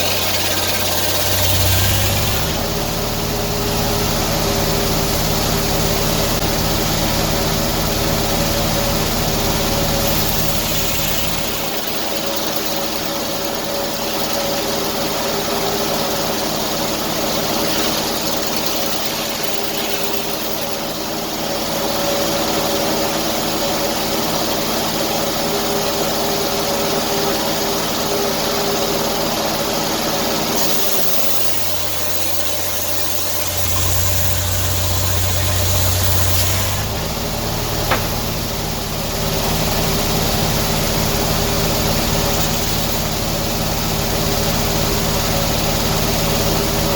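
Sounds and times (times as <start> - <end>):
engine running: 0.0 - 22.8, 30.5 - 46.9
sharp click: 37.9 - 38.4.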